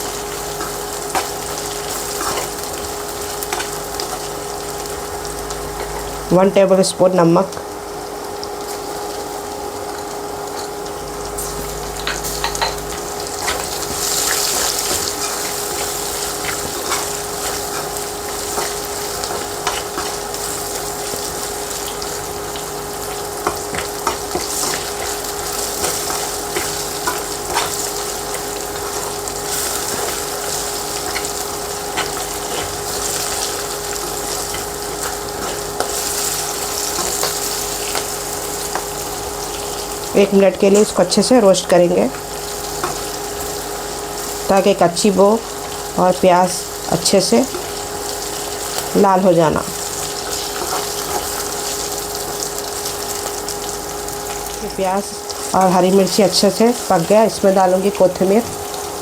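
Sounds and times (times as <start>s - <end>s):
onions sizzling in oil: 0.0s - 59.0s
steady hum: 0.0s - 59.0s
spoon scraping a pan: 0.6s - 2.6s, 13.4s - 21.3s.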